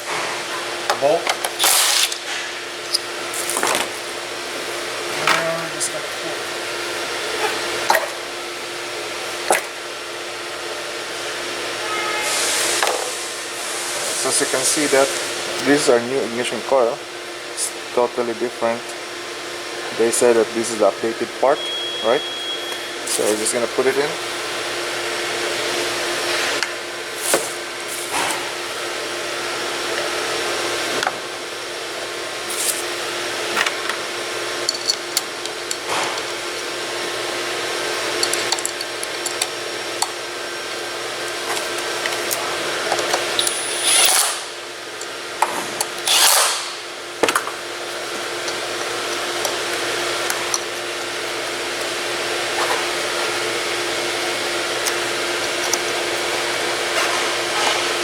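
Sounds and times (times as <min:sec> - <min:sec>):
fan-like whir: 0:00.0 - 0:58.0
clicks and knocks of hands working: 0:37.9 - 0:40.2, 0:54.2 - 0:58.0.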